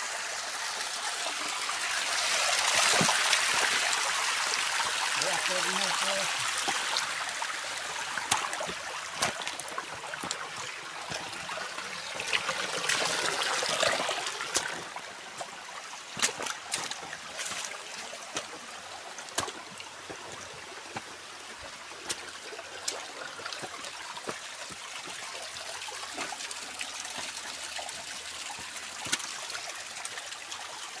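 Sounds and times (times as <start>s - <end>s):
stream water trickling: 0.0s - 31.0s
water drip clicks: 7.8s - 11.4s, 16.1s - 25.2s, 26.0s - 30.3s.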